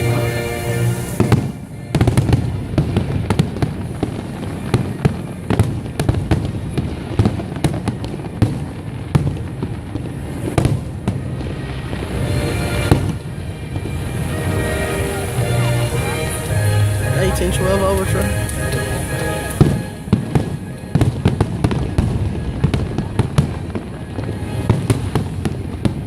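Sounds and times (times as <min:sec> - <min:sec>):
music: 0:00.0 - 0:03.6, 0:11.3 - 0:26.0
firework bangs and crackles: 0:00.0 - 0:26.0.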